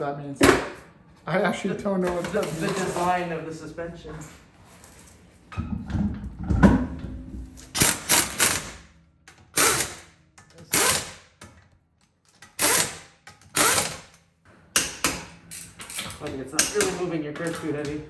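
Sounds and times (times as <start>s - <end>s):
impact wrench bursts: 7.6s - 11.4s, 12.5s - 14.2s, 14.8s - 17.0s.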